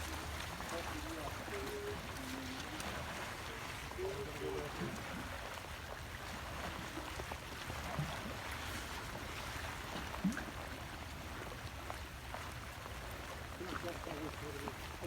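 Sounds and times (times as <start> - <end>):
faint splashes: 0.0 - 15.0.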